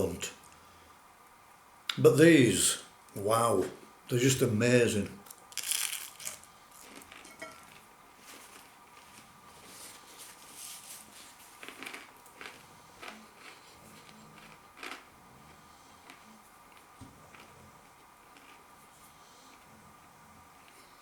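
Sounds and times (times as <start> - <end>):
crunching while eating fried prawns: 5.3 - 18.8.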